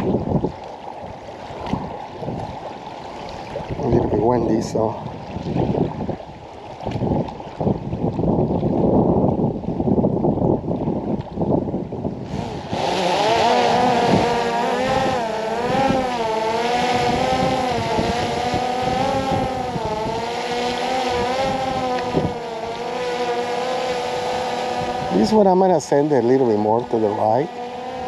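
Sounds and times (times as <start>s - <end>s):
drone propellers whining: 12.1s - 28.0s.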